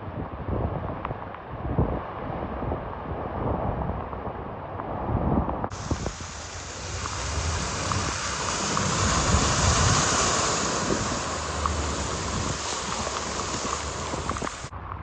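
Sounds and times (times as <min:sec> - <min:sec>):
low rumble: 0:04.8 - 0:15.0
water rushing on road: 0:05.7 - 0:14.7.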